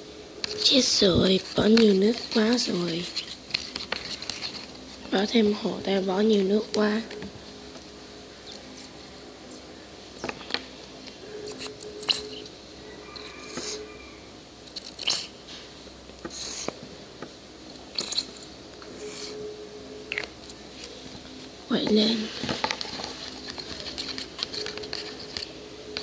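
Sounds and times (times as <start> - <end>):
slime squelching: 0.5 - 7.2, 14.7 - 15.4, 17.9 - 19.4, 21.8 - 25.6.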